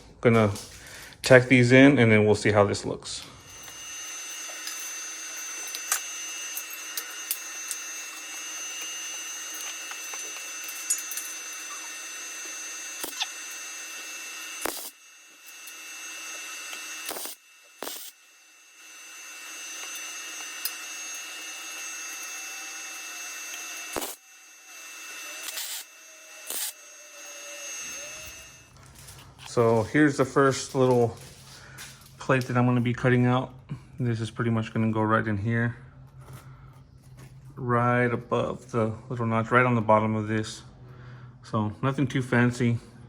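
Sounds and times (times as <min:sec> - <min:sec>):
welding arc hissing and crackling: 0:03.1 - 0:32.7.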